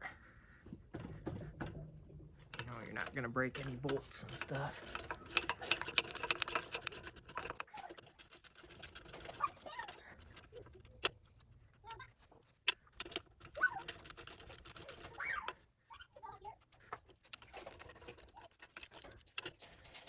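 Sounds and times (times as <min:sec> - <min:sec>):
hand tools clicking on metal: 0:01.0 - 0:15.7, 0:16.6 - 0:20.0.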